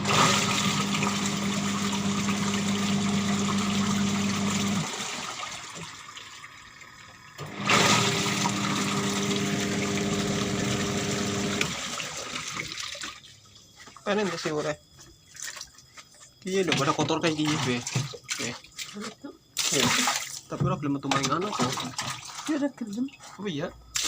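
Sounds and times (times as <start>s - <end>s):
washing machine motor humming: 0.0s - 12.8s
water churning: 0.0s - 13.4s.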